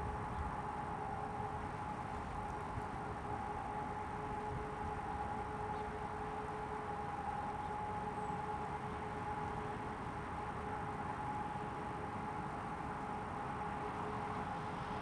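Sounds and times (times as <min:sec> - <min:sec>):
distant siren steady tone: 0:00.0 - 0:15.0.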